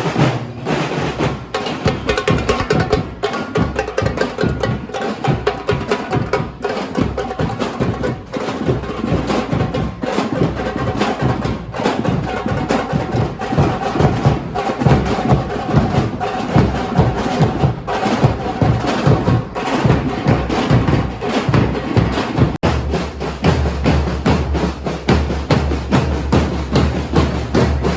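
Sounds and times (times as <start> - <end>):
fast drum beat: 0.0 - 27.9
woodblock-like knocking: 1.8 - 4.7.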